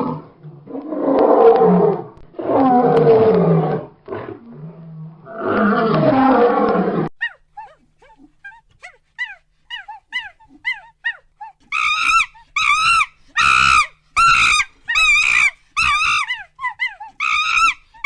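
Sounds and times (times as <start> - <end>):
animal long pitched calls: 5.3 - 18.0
animal chirping: 7.2 - 18.0.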